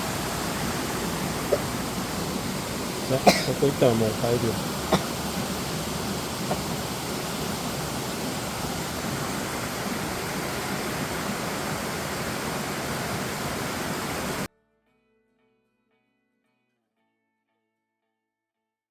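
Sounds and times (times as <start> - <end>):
water rushing in a stream: 0.0 - 14.5.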